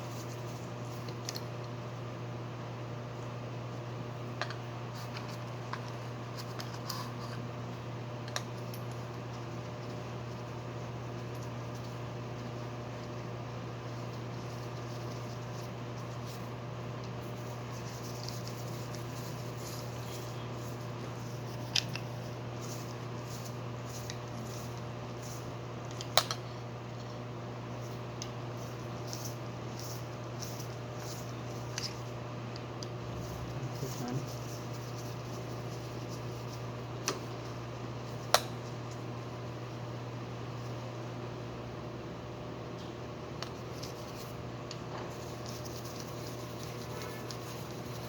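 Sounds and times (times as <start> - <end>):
steady low hum: 0.0 - 48.0.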